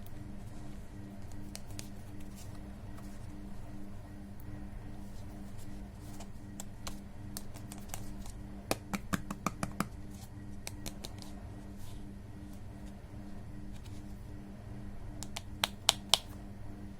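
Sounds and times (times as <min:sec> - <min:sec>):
plastic packaging clicks and taps: 0:06.6 - 0:10.0, 0:10.6 - 0:11.3, 0:15.2 - 0:16.3.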